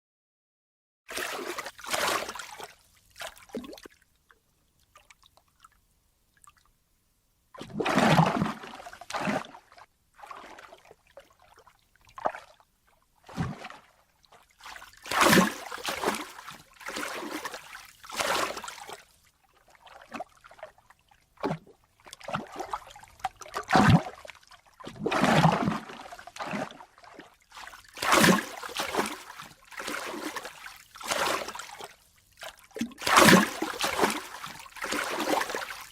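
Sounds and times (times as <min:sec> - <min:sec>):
ocean water splashing: 0:01.1 - 0:02.7, 0:28.0 - 0:31.9, 0:32.9 - 0:35.9.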